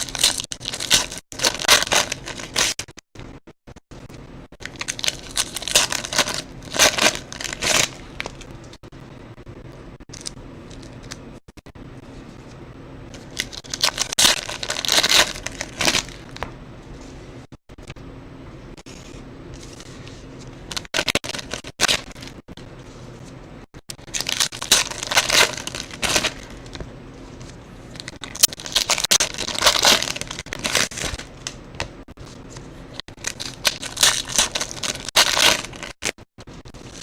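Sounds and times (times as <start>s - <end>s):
foil wrappers tearing and crinkling: 0.0s - 2.9s, 4.6s - 8.5s, 13.2s - 16.4s, 20.7s - 22.3s, 23.9s - 26.8s, 27.9s - 31.4s, 33.1s - 36.2s.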